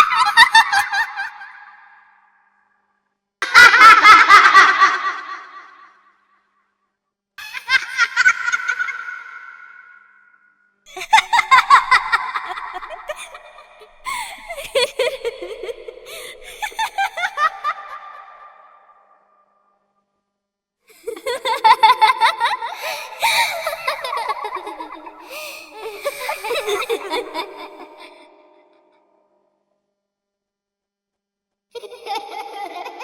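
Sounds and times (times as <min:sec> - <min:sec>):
children giggling: 0:00.0 - 0:01.5, 0:07.4 - 0:09.5, 0:10.9 - 0:18.5, 0:20.9 - 0:28.5, 0:31.8 - 0:33.0.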